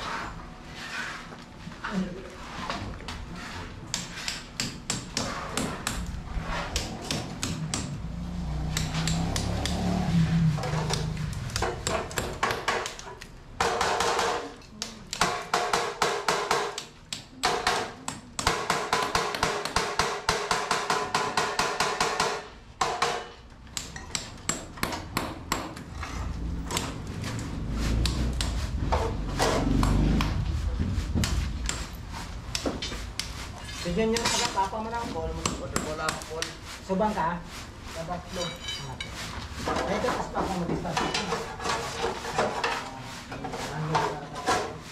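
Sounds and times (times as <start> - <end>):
hammer striking rapidly: 4.0 - 8.0, 10.6 - 13.0.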